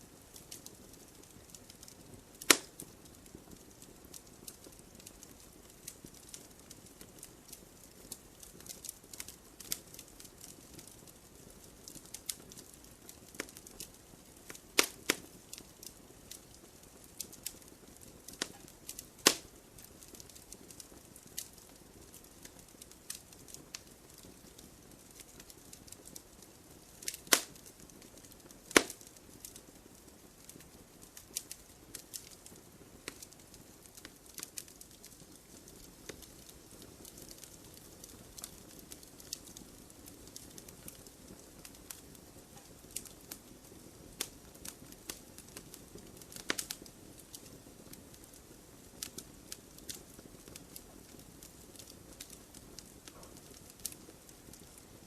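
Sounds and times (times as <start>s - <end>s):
campfire crackling: 0.0s - 55.0s
burning wood pops: 0.2s - 55.0s.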